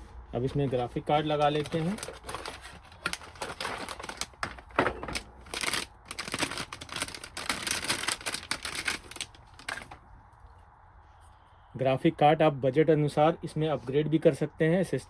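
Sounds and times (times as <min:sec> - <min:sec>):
plastic and metal knocks and scrapes: 0:00.6 - 0:10.0.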